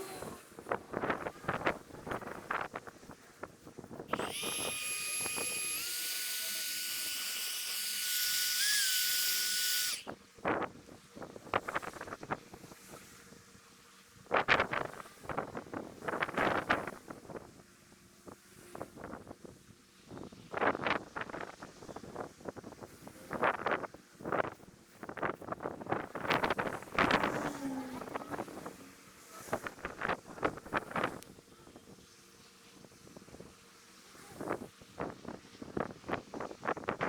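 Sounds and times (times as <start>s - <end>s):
steam whistling hiss: 4.1s - 10.1s.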